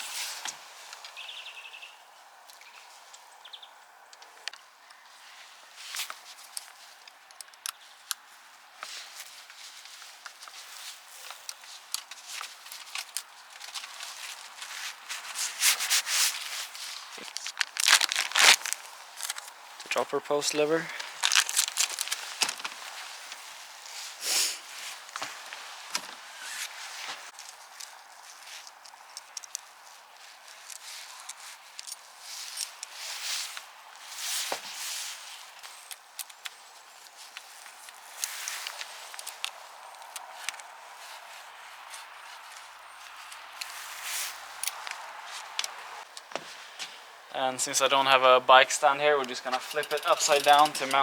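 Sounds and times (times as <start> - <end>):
rustling of hands working: 4.2 - 51.0
hands scraping on bicycle parts: 8.8 - 20.0, 49.2 - 51.0.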